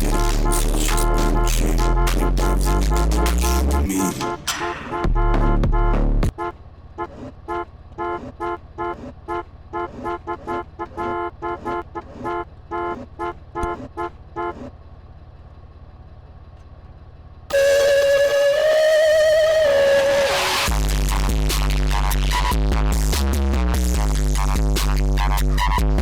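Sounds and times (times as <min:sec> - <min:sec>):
loud bass-heavy music: 0:00.0 - 0:06.3, 0:18.7 - 0:26.0
horn short toots: 0:00.0 - 0:14.7.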